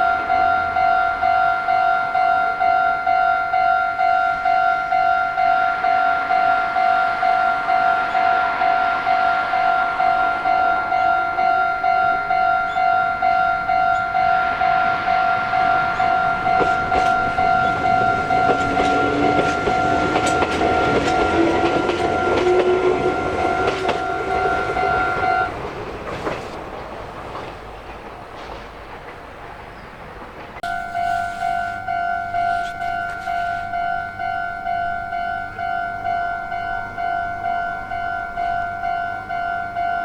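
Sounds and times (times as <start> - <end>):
level-crossing warning bell: 0.0 - 28.3, 30.6 - 40.0
train motor whine: 0.0 - 28.9, 30.6 - 40.0
wheels clicking over rail joints: 11.0 - 40.0.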